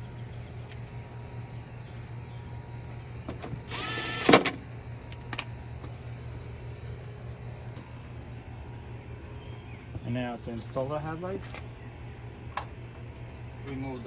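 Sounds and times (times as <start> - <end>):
steady low hum: 0.0 - 14.0
small electric motor whirring: 3.6 - 4.4.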